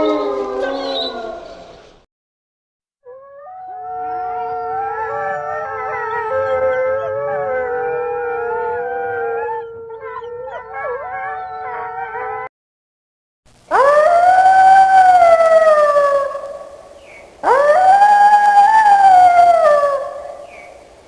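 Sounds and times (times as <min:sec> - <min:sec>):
wolves howling: 0:03.1 - 0:12.5, 0:13.7 - 0:16.8, 0:17.4 - 0:20.5.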